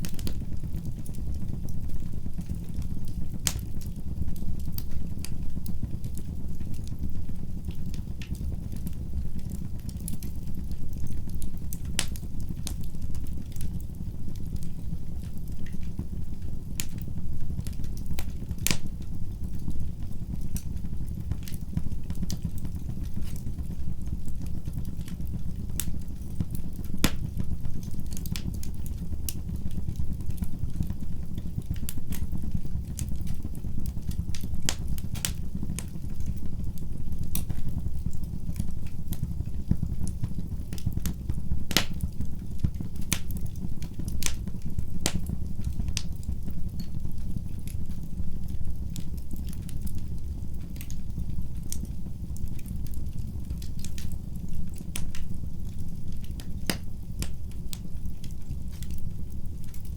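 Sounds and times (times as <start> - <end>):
fire crackling in fireplace: 0.0 - 59.9.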